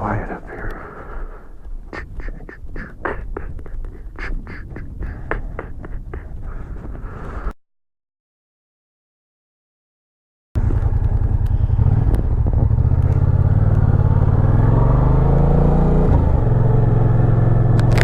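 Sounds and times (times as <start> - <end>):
motorcycle engine accelerating: 10.6 - 18.0.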